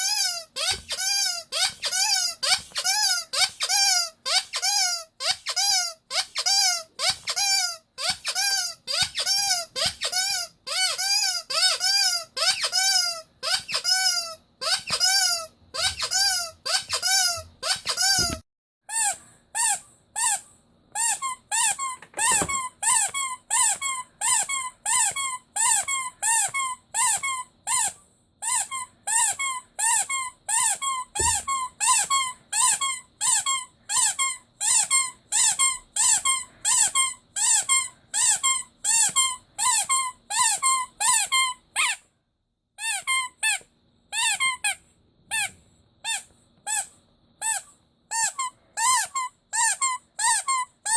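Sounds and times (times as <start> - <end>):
rubber squeaky toy squeaking: 0.0 - 42.1, 42.8 - 50.9.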